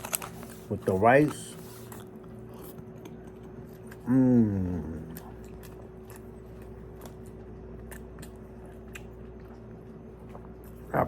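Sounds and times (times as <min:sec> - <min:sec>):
faint steady hum: 0:00.0 - 0:11.0
man humming while eating: 0:03.9 - 0:05.5.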